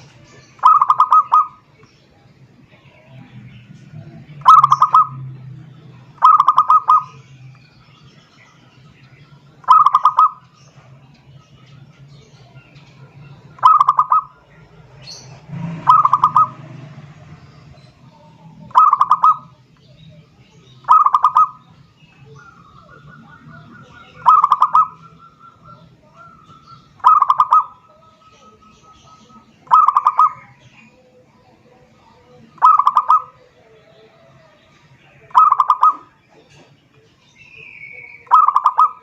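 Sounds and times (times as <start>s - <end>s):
dove cooing: 0.0s - 1.8s, 4.4s - 5.4s, 6.1s - 7.3s, 9.6s - 10.9s, 12.4s - 16.8s, 17.6s - 19.6s, 20.8s - 31.3s, 32.5s - 34.6s, 35.2s - 36.7s, 38.2s - 39.0s.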